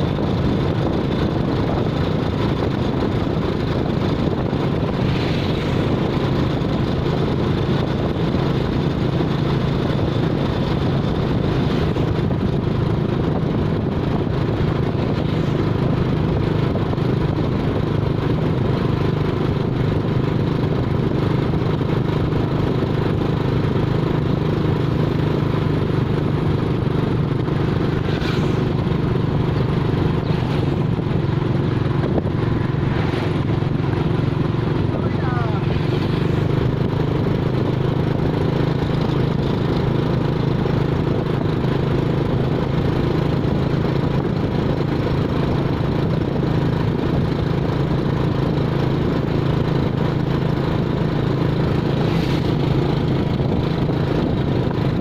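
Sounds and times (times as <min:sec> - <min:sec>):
vehicle engine running steadily: 0:00.0 - 0:55.0.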